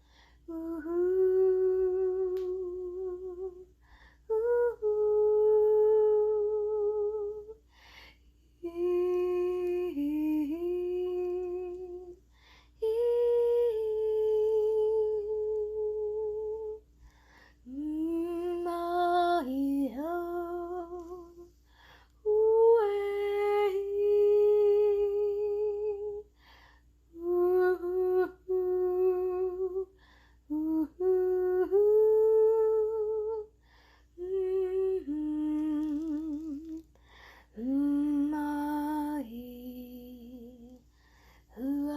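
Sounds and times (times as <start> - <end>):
person singing wordlessly: 0.5 - 3.7, 4.3 - 7.6, 8.6 - 12.2, 17.7 - 21.5, 22.2 - 26.2, 27.2 - 29.9, 34.2 - 36.9, 41.5 - 41.9.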